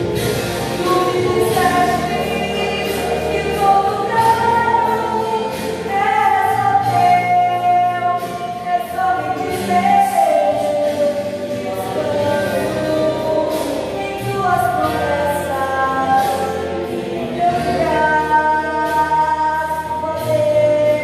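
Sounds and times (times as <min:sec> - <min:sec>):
choir singing a hymn: 0:00.0 - 0:06.0, 0:08.6 - 0:18.2.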